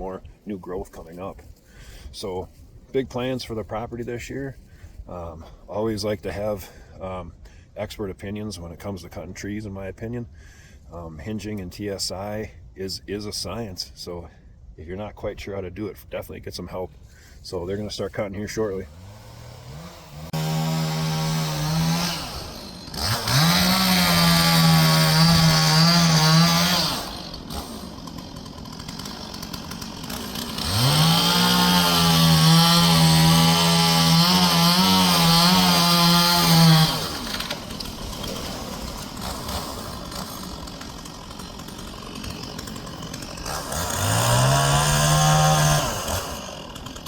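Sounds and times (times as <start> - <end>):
chainsaw revving and idling: 18.4 - 47.0.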